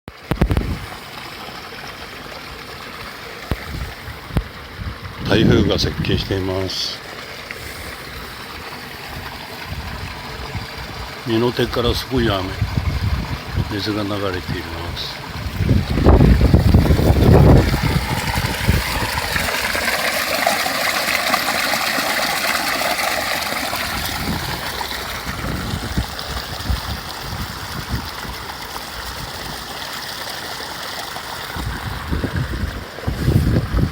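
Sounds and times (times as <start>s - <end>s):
water rushing: 0.1s - 33.9s
wind buffeting microphone: 0.4s - 0.9s, 3.5s - 6.6s, 9.0s - 19.9s, 23.8s - 29.7s, 31.5s - 33.9s.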